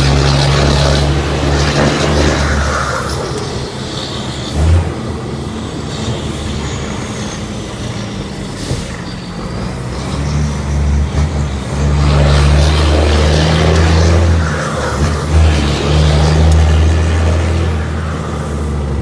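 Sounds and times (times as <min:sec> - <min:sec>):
truck diesel engine running: 0:00.0 - 0:19.0.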